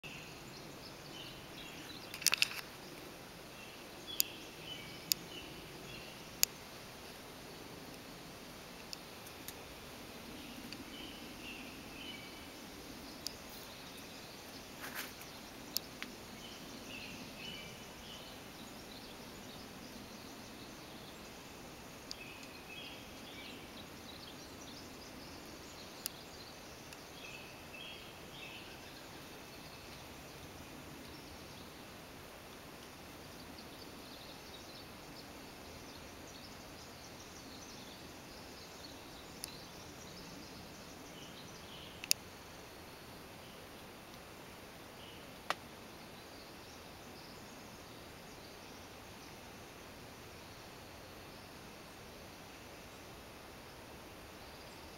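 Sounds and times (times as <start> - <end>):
songbirds chirping: 0.0 - 54.9
steady background hiss: 0.0 - 54.9
sharp clicks: 2.1 - 2.7.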